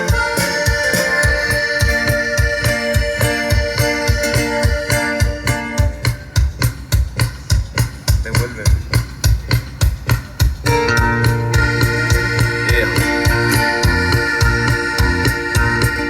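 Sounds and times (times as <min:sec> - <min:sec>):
electronic keyboard chords: 0:00.0 - 0:06.5, 0:10.6 - 0:16.0
bass and drum beat: 0:00.0 - 0:16.0.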